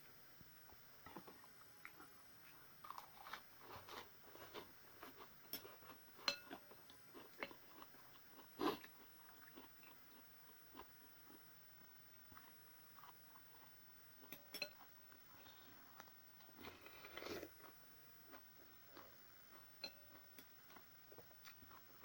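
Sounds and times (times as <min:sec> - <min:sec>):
person chewing: 0:01.1 - 0:11.4, 0:12.3 - 0:22.0
utensil clinking against bowl: 0:14.3 - 0:14.8.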